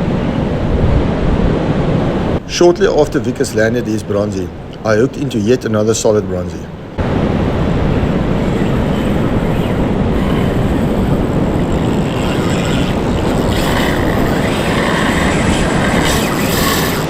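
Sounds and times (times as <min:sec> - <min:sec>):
wind buffeting microphone: 0:00.0 - 0:05.8, 0:06.6 - 0:17.0
breaking surf: 0:06.9 - 0:17.0.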